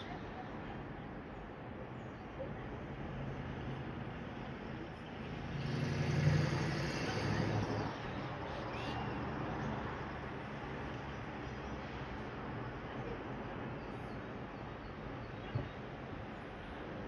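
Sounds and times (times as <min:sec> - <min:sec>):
outdoor background noise: 0:00.0 - 0:17.0
road vehicle passing by: 0:05.0 - 0:11.2.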